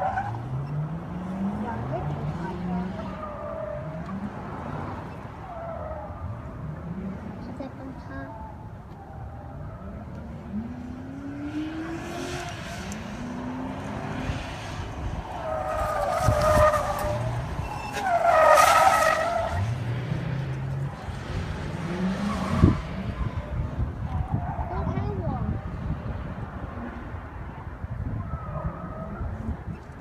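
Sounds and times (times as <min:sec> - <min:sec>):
car engines revving: 0:00.0 - 0:30.0
tyres squealing: 0:15.4 - 0:19.8.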